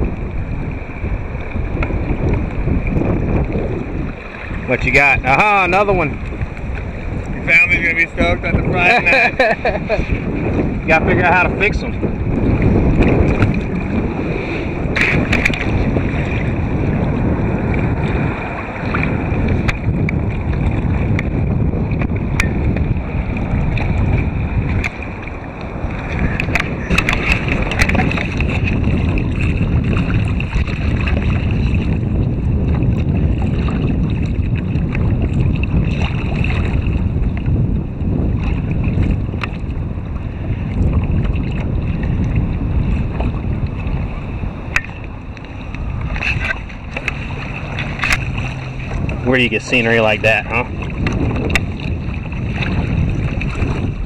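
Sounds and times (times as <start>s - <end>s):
water sloshing against kayak hull: 0.0s - 54.0s
wind buffeting microphone: 0.0s - 54.0s
splashes: 44.7s - 54.0s.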